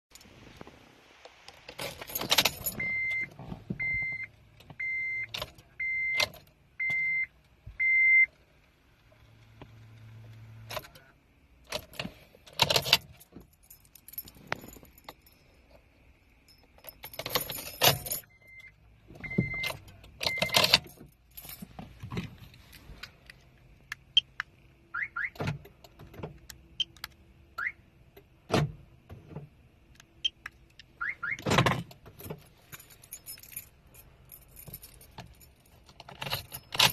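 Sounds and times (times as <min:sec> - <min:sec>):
keys jangling: 0:01.7 - 0:02.9, 0:11.7 - 0:15.8, 0:16.4 - 0:18.3, 0:32.1 - 0:36.9
dashboard warning chime beeping: 0:02.5 - 0:08.3, 0:17.8 - 0:21.0, 0:31.0 - 0:31.5.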